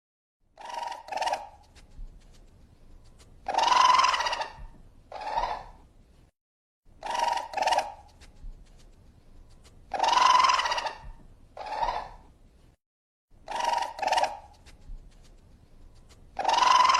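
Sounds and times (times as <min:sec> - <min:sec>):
raccoon hoarse squeals: 0:00.6 - 0:01.7, 0:03.4 - 0:05.8, 0:07.0 - 0:08.1, 0:09.9 - 0:12.2, 0:13.4 - 0:14.6, 0:16.0 - 0:16.9.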